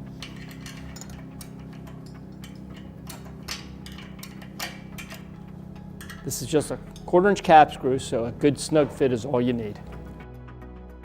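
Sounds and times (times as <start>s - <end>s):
ratchet wrench clicking: 0.0s - 7.6s
steady low hum: 0.0s - 10.2s.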